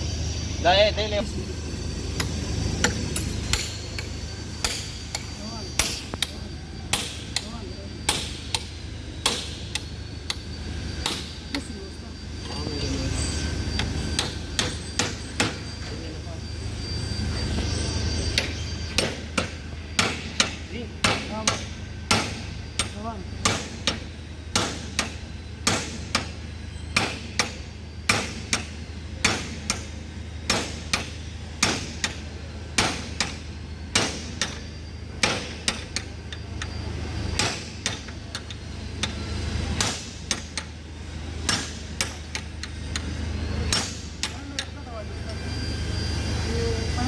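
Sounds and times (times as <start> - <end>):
steady low hum: 0.0 - 47.0
hammer striking: 2.2 - 10.4, 11.0 - 11.7, 13.8 - 15.6, 18.4 - 26.4, 27.0 - 32.2, 32.8 - 34.6, 35.2 - 36.7, 37.3 - 39.2, 39.8 - 40.7, 41.4 - 43.1, 43.7 - 44.8.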